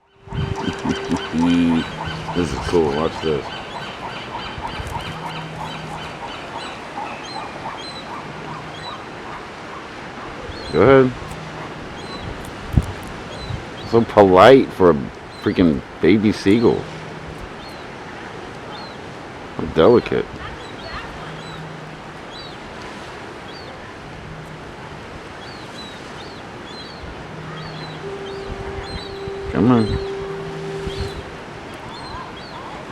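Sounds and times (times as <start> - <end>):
low steady hum: 0.0 - 7.2, 27.1 - 32.4
high chirping calls: 0.0 - 19.2, 19.8 - 32.9
ocean surf: 0.0 - 32.9
gull chick begging peeps: 0.2 - 9.5, 25.4 - 31.2.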